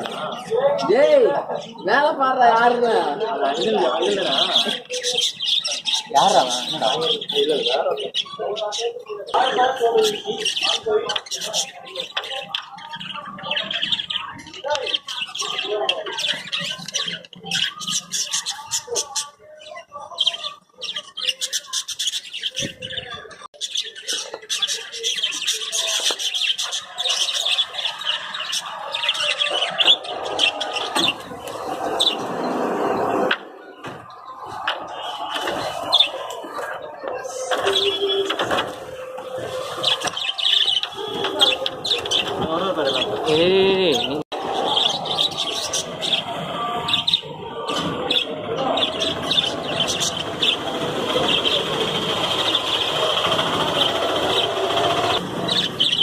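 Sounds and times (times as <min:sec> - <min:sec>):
parakeets chirping and chattering: 0:00.0 - 0:56.0.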